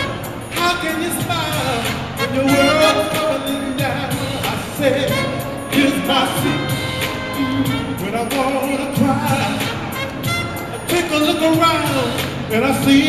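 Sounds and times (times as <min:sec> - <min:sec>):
band accompaniment: 0:00.0 - 0:13.0
gospel ensemble singing: 0:01.8 - 0:05.0.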